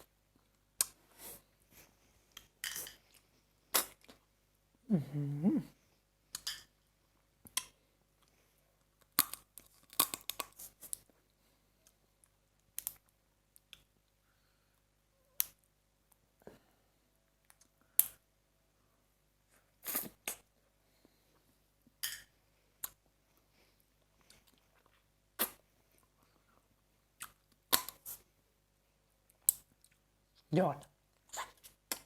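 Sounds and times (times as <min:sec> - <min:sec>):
quiet chewing: 0:22.7 - 0:28.3, 0:29.3 - 0:30.4.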